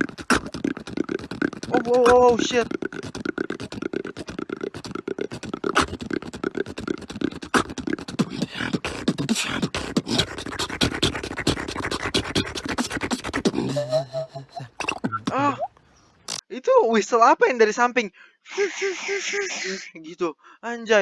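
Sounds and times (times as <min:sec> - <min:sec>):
person beatboxing: 0:00.0 - 0:15.7.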